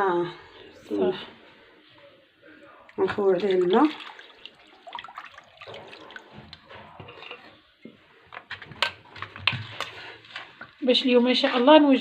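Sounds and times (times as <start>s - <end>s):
water pouring into a pot: 3.2s - 6.5s.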